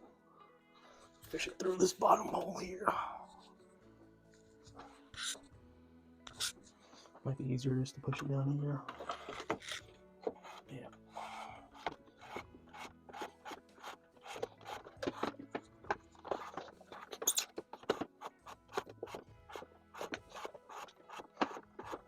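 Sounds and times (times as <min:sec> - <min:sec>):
cable scraping plastic housing: 0:08.8 - 0:22.0.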